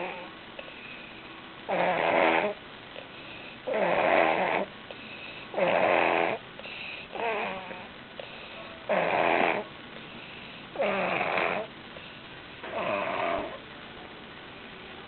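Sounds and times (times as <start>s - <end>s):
heavy snoring: 0.0s - 0.8s, 1.7s - 2.6s, 3.6s - 9.7s, 10.8s - 11.7s, 12.6s - 13.6s
quiet breathing: 0.0s - 1.5s, 2.9s - 3.8s, 4.6s - 5.6s, 6.3s - 13.6s.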